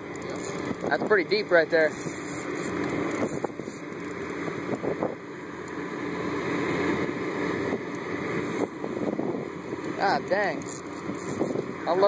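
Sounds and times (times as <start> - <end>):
motor running: 0.0 - 12.0
wind buffeting microphone: 0.3 - 3.8, 4.4 - 5.2, 6.9 - 12.0.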